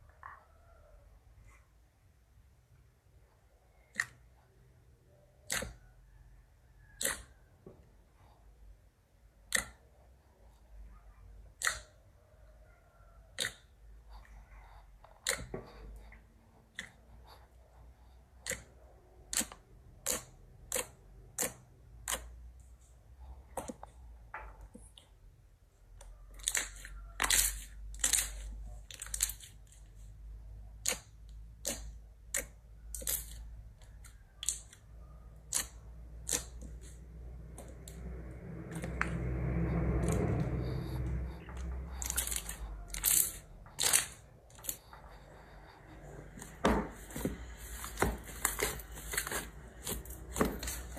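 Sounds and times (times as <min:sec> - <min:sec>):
sharp irregular clicks: 0:11.5 - 0:12.0, 0:18.4 - 0:22.4.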